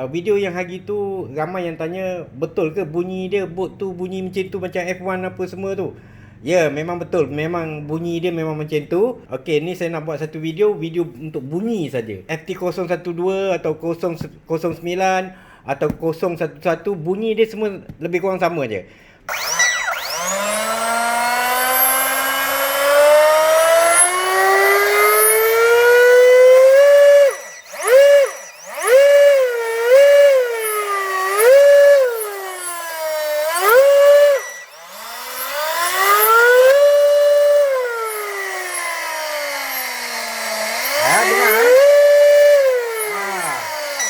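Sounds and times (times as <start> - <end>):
electric motor whine: 19.3 - 44.0.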